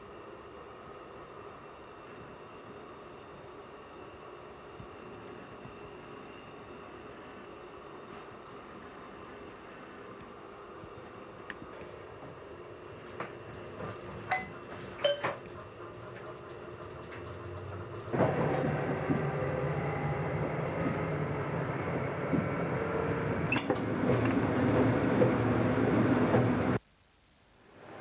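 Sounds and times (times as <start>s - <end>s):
train running noise: 7.8s - 26.8s.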